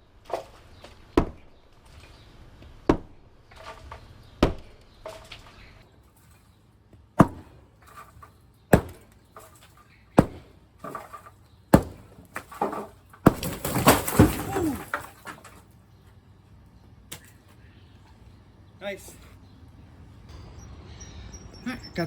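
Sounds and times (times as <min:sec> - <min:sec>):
heavy strikes on concrete wall: 0:01.2 - 0:01.5, 0:02.9 - 0:03.2, 0:04.4 - 0:04.6, 0:07.2 - 0:07.6, 0:08.7 - 0:09.6, 0:10.2 - 0:15.3
falling rubble crashing down: 0:07.2 - 0:15.7.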